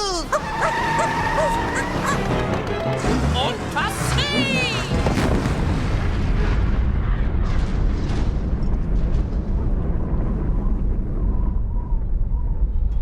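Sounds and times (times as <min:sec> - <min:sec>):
building crashes: 0:04.8 - 0:11.7
rumble of falling debris: 0:04.9 - 0:13.0.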